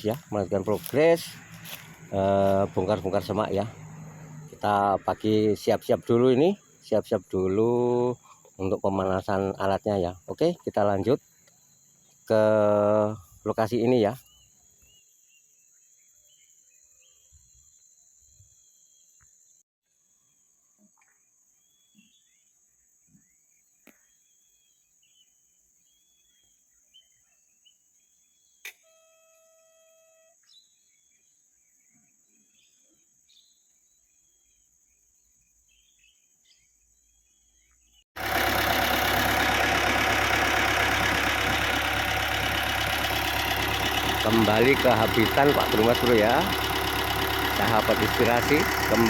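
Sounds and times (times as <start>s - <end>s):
excavator diesel engine running: 0.0s - 6.2s, 38.2s - 49.0s
birds chirping: 0.0s - 15.1s, 35.3s - 49.0s.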